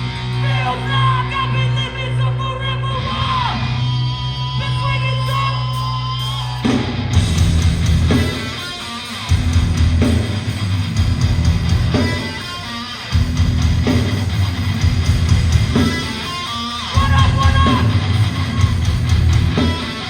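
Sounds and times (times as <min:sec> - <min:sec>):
distorted electric guitars: 0:00.0 - 0:20.0
drum kit: 0:05.6 - 0:20.0.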